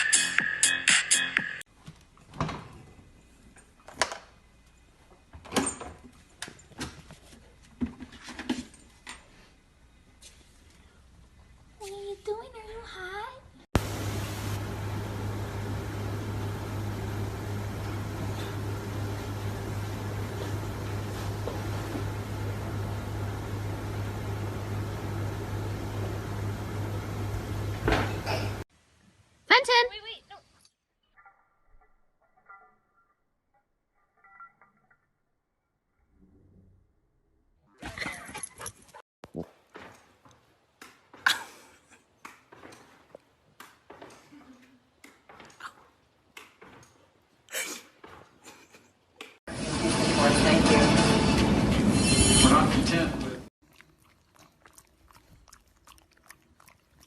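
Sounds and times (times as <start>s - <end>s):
machine humming: 13.8s - 28.6s.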